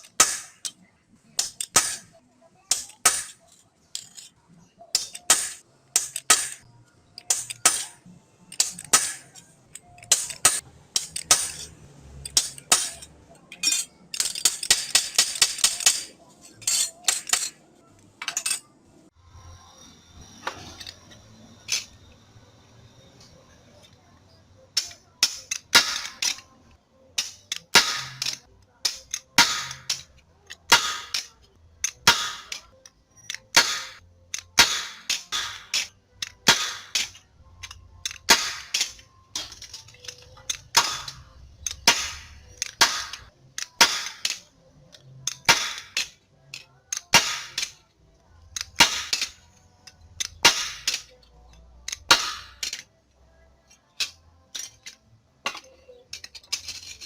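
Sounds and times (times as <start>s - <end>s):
hammer striking sheet steel: 0.1s - 0.7s, 1.4s - 3.4s, 5.0s - 6.6s, 8.6s - 9.3s, 10.1s - 11.7s, 12.3s - 13.1s, 27.2s - 30.1s, 30.7s - 31.3s, 32.0s - 32.6s, 33.5s - 34.0s, 34.6s - 37.2s.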